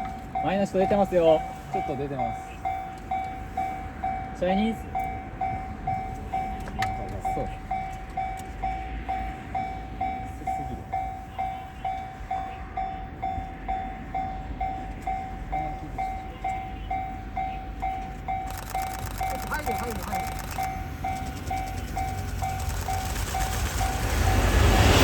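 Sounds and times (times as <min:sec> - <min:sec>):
level-crossing warning bell: 0:00.0 - 0:25.0
low rumble: 0:20.6 - 0:25.0.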